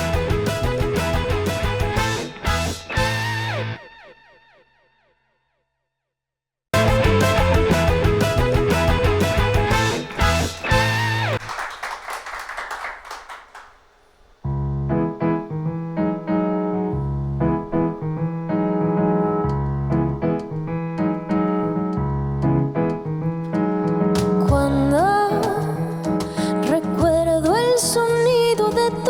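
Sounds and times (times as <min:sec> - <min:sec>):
bass line: 0:00.0 - 0:03.8, 0:06.8 - 0:11.4, 0:14.5 - 0:15.8, 0:24.5 - 0:25.6
keyboard playing chords: 0:00.0 - 0:03.8, 0:06.8 - 0:11.4, 0:14.5 - 0:27.0
music piece ending: 0:06.8 - 0:11.4.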